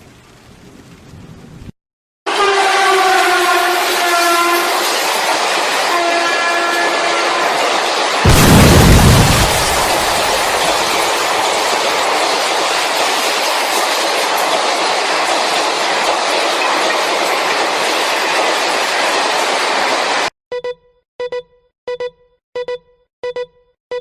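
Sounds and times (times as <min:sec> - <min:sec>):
loud low boom: 0:08.2 - 0:09.8.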